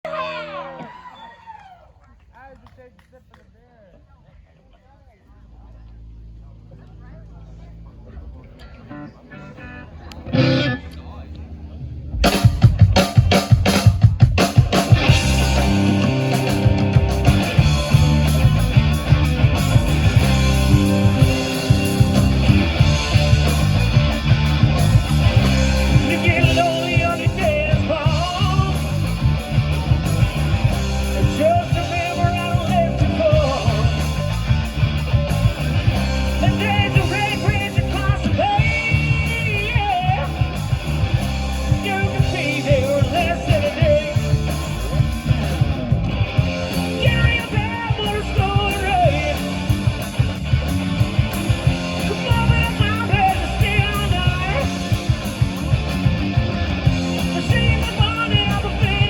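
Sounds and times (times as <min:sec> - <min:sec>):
rock band playing: 0:08.7 - 0:59.0
lead vocal singing: 0:25.8 - 0:29.2, 0:31.0 - 0:34.4, 0:36.3 - 0:40.7, 0:41.4 - 0:44.9, 0:46.8 - 0:49.8, 0:52.0 - 0:55.2, 0:57.2 - 0:59.0.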